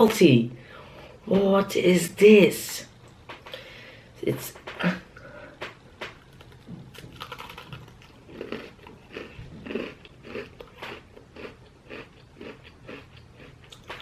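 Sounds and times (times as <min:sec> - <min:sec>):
person chewing crunchy cookie: 0:05.6 - 0:14.0.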